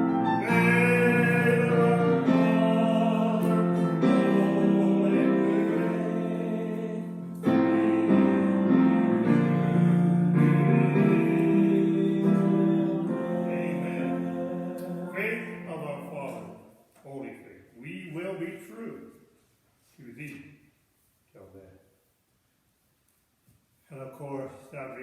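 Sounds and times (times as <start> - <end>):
held keyboard chords: 0.0 - 16.0
hymn singing: 0.0 - 19.0.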